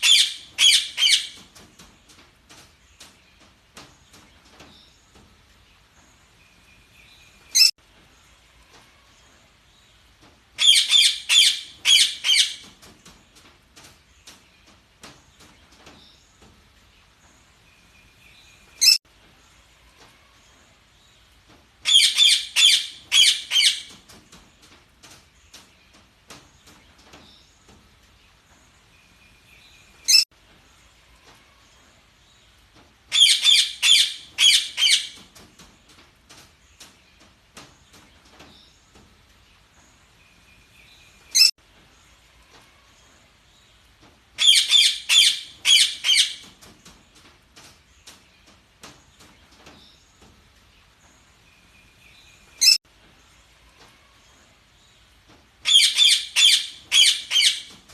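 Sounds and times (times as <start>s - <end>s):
parakeets chirping: 0.0s - 1.4s, 10.6s - 12.6s, 21.9s - 23.9s, 33.1s - 35.2s, 44.4s - 46.4s, 55.6s - 57.8s.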